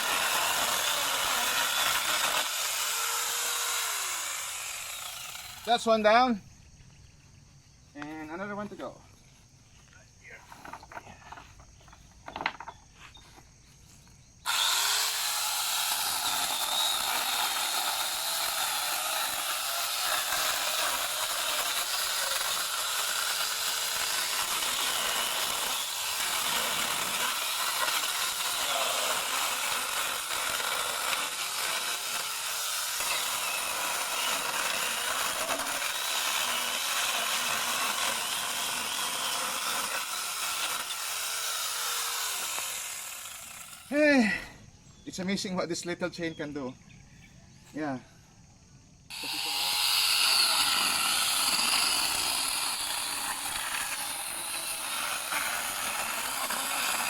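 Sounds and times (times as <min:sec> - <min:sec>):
chainsaw cutting firewood: 0:00.0 - 0:05.8, 0:14.4 - 0:44.4, 0:49.1 - 0:57.0.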